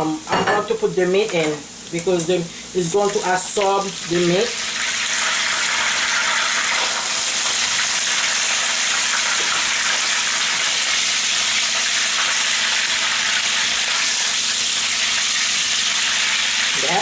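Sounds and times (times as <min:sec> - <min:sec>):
pork sizzling in hot oil: 0:00.0 - 0:17.0.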